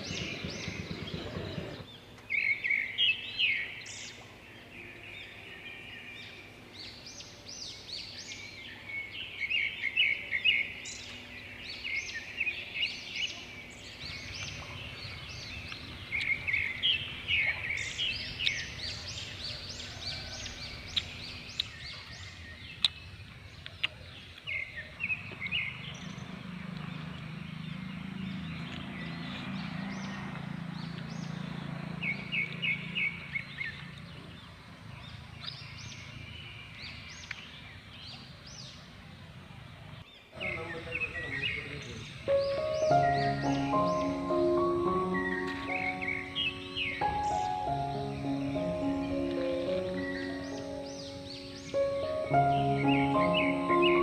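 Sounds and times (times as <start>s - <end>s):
birds chirping: 0.0s - 54.0s.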